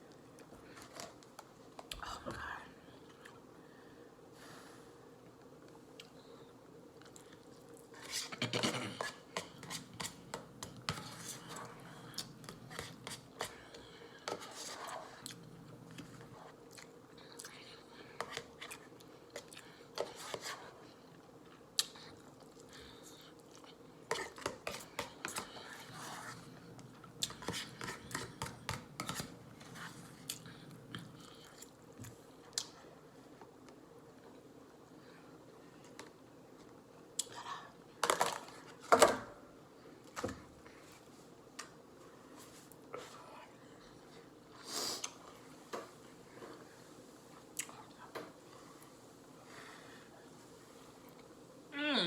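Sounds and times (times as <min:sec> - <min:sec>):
person chewing noodles: 0:21.4 - 0:32.8.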